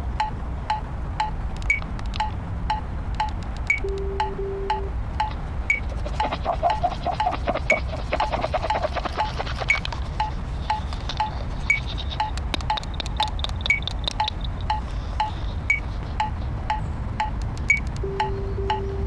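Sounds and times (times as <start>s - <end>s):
electronic metronome beeps: 0.2s - 8.8s, 9.6s - 19.0s
sharp clicks: 0.7s - 18.8s.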